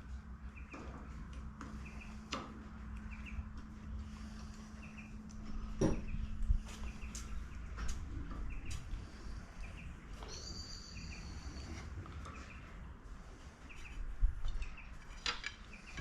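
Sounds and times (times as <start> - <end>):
birds chirping: 0.4 - 2.3, 3.0 - 12.8, 13.4 - 16.0.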